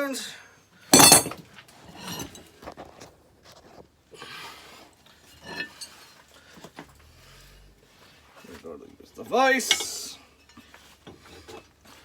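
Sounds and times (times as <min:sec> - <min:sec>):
objects clicking and clinking: 0:01.0 - 0:01.4.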